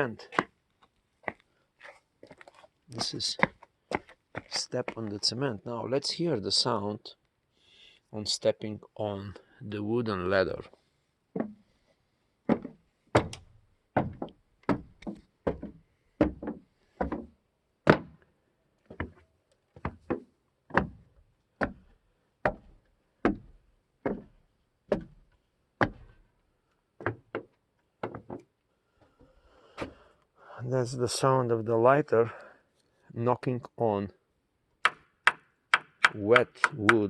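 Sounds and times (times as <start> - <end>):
hollow knocks on wood: 12.5 - 13.4, 14.0 - 17.3, 27.0 - 28.4.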